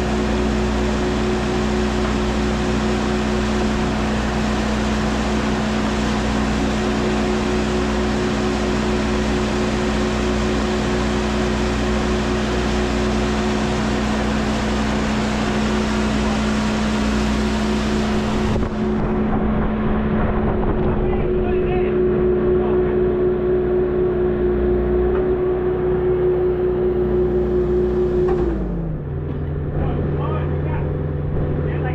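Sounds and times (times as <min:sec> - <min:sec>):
machine engine humming: 0:00.0 - 0:31.9.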